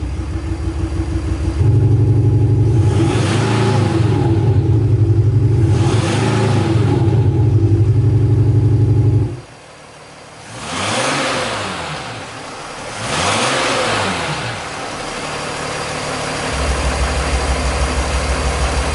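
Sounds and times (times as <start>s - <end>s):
engine revving: 0.0s - 9.5s, 10.4s - 18.9s
diesel engine idle drone: 0.0s - 10.6s, 11.6s - 13.1s, 13.8s - 18.9s.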